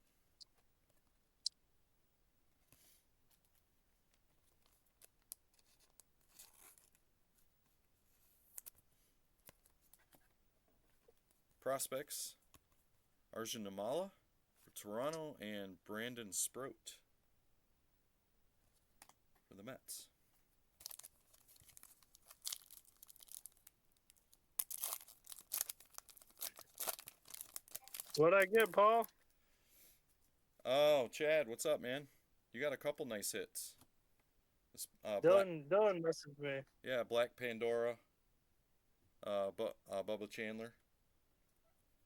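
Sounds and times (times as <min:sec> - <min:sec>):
wrapper crinkling: 0:20.8 - 0:29.1.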